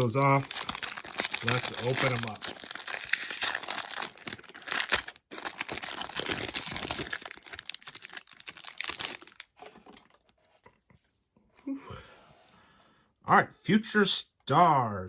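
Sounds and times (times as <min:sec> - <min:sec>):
wrapper tearing and crinkling: 0:00.0 - 0:10.3.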